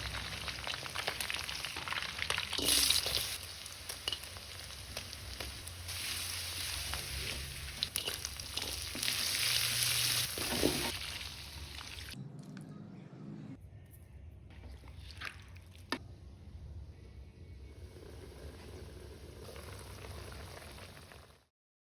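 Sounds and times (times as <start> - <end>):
food sizzling in a pan: 0.0 - 12.2.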